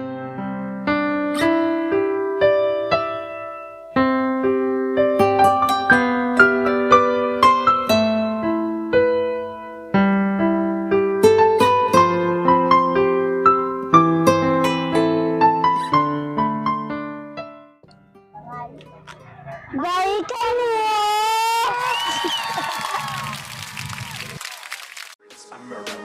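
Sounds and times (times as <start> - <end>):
gentle electric piano melody: 0.0 - 19.2.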